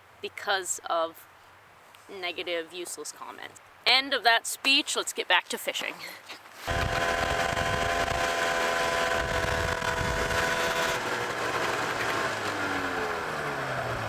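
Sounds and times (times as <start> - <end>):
vehicle engine running: 6.7 - 14.0.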